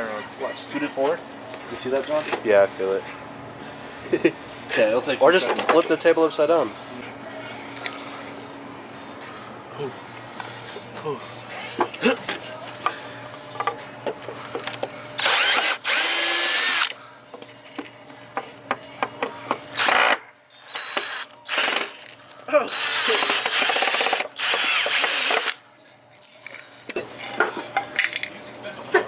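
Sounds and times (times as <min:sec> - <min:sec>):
power drill driving screws: 0:15.2 - 0:16.9, 0:19.7 - 0:25.6.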